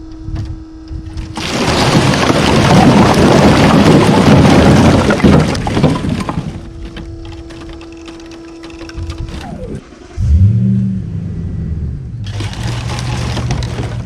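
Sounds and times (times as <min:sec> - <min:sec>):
vehicle engine starting and running: 0:07.8 - 0:14.0
hum sliding down in pitch: 0:09.4 - 0:12.3.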